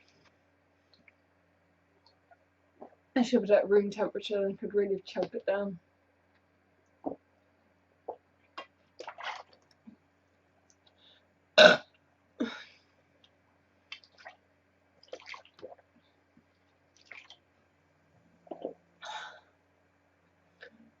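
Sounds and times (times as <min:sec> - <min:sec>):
girl burping: 0:11.6 - 0:11.8.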